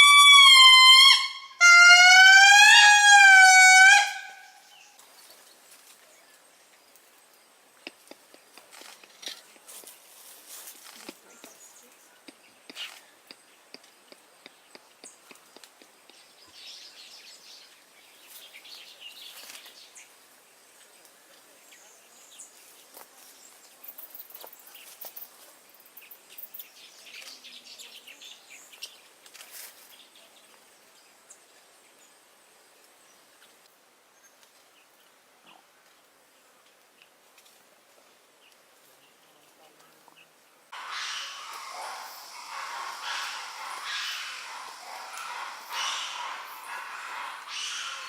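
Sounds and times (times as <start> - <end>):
low steady hiss: 2.3 - 48.0
insect calls: 40.7 - 48.0
bird chirps: 40.8 - 48.0.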